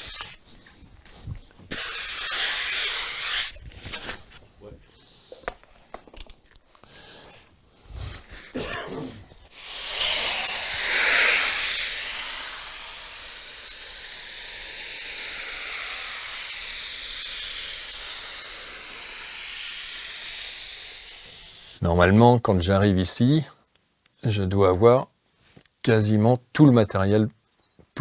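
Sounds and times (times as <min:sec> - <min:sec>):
gas spraying hiss: 0:00.0 - 0:00.6, 0:01.2 - 0:04.2, 0:09.5 - 0:21.8.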